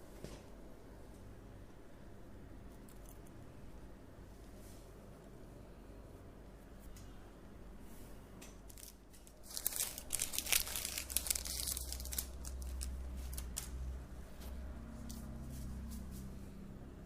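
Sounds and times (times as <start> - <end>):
low steady hum: 0.0 - 17.0
crinkling rustles: 8.7 - 16.1.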